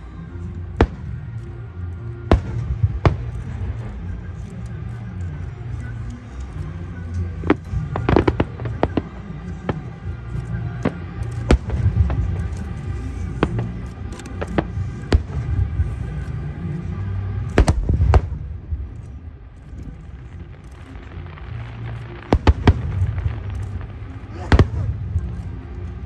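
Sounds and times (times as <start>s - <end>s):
low rumble: 0.0s - 26.0s
fireworks bangs: 2.2s - 4.2s, 7.4s - 16.3s, 17.1s - 19.0s, 19.7s - 26.0s.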